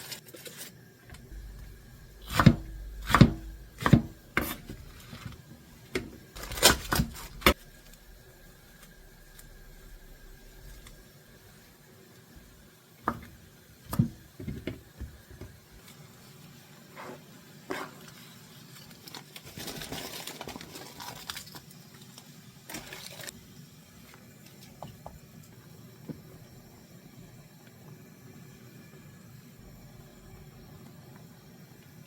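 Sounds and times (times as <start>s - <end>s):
noisy rustling: 1.2s - 11.8s.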